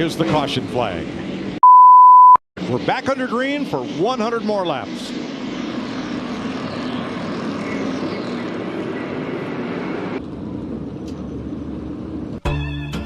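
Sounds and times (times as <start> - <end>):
music: 12.4 - 13.0.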